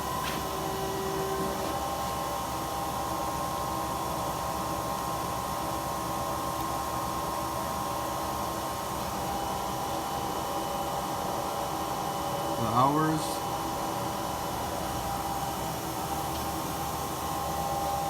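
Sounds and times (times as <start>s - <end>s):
mechanical hum: 0.0s - 18.0s.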